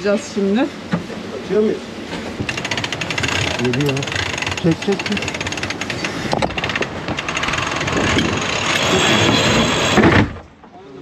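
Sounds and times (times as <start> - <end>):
sails flapping: 0.0 - 11.0
winch ratcheting: 2.4 - 10.1
wind rush over microphone: 5.2 - 10.4.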